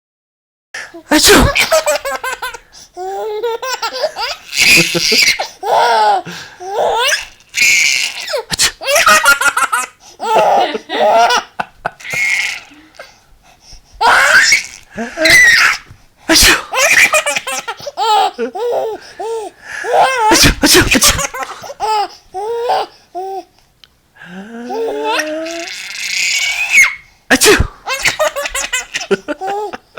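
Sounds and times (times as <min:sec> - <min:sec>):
person sneezing: 0:00.8 - 0:01.9, 0:08.4 - 0:08.9, 0:14.1 - 0:17.1, 0:20.3 - 0:21.7, 0:27.3 - 0:27.9
child laughing hard: 0:01.2 - 0:12.7, 0:14.0 - 0:19.0, 0:19.9 - 0:22.1, 0:24.8 - 0:27.0, 0:27.9 - 0:29.9.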